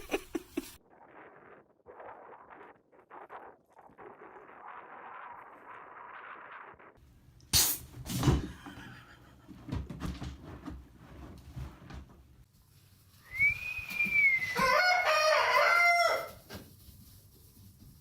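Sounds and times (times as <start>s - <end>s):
rooster crowing: 14.2s - 16.4s.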